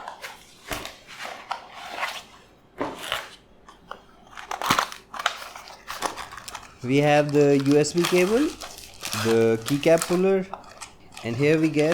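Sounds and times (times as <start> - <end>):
plastic packaging rustling: 4.2 - 11.9.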